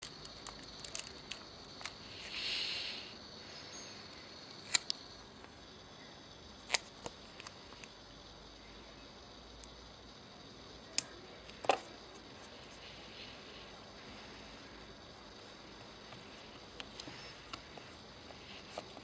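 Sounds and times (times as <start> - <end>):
soft rustle: 11.5 - 19.0.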